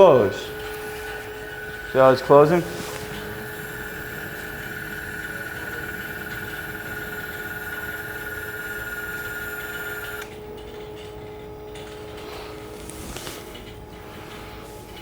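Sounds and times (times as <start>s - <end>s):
valve actuator whining: 0.0s - 10.8s
steady low hum: 0.0s - 15.0s.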